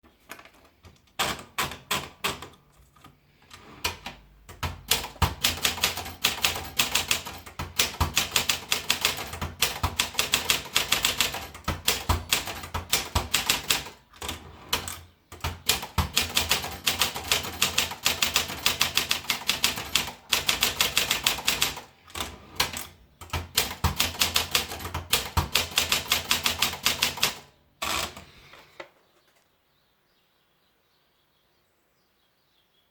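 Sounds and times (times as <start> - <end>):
manual typewriter typing: 0.3 - 28.5.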